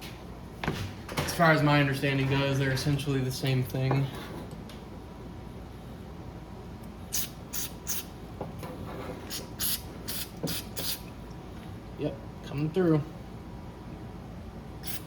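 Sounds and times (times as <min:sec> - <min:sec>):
aerosol spray hissing: 0:07.1 - 0:08.1, 0:09.3 - 0:11.0.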